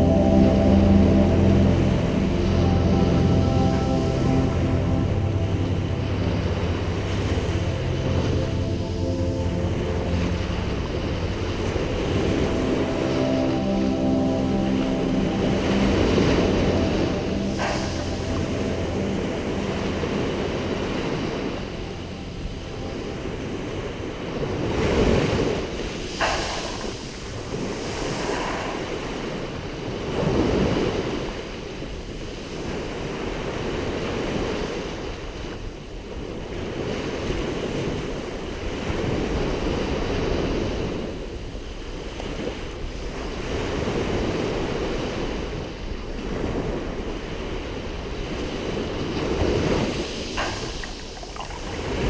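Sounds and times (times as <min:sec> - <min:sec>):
wind noise on microphone: 0:09.8 - 0:52.0
waves washing onto pebble beach: 0:48.7 - 0:52.0.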